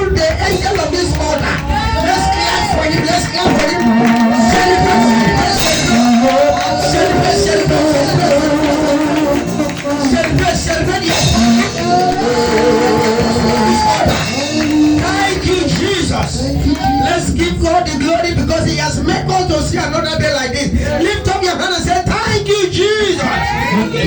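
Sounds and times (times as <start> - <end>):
voices singing: 0.0 - 18.2, 23.0 - 24.0
band accompaniment: 0.0 - 22.2.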